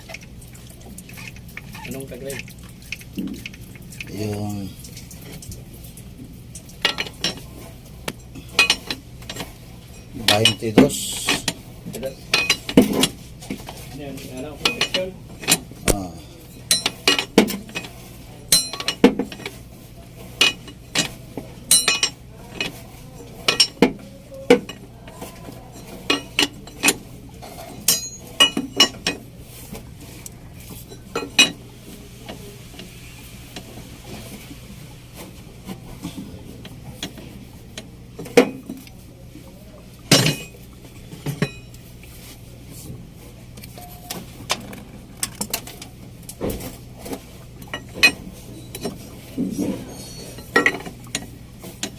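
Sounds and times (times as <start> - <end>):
metal tools clinking on metal: 6.6 - 7.5, 8.2 - 13.2, 14.3 - 15.7, 16.5 - 19.6, 20.4 - 29.2, 40.1 - 40.6, 41.2 - 41.8, 49.6 - 51.9.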